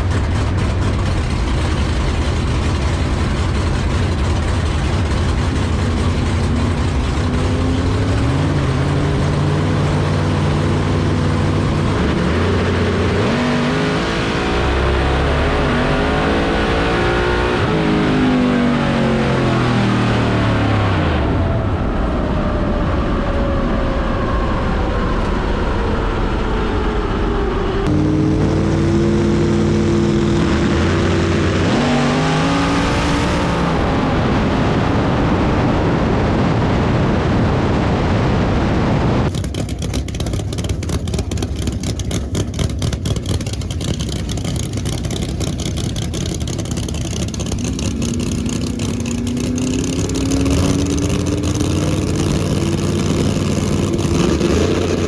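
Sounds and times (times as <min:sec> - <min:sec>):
choppy ticking engine: 0:00.0 - 0:17.8, 0:39.3 - 0:55.0
drag race car engine revving: 0:00.0 - 0:24.2, 0:26.4 - 0:55.0.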